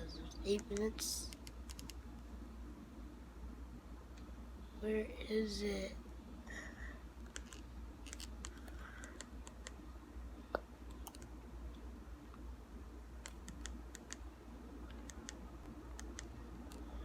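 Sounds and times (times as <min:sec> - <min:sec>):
steady low hum: 0:00.0 - 0:17.0
computer mouse clicking: 0:00.5 - 0:02.0, 0:07.2 - 0:09.8, 0:10.9 - 0:11.3, 0:13.2 - 0:17.0.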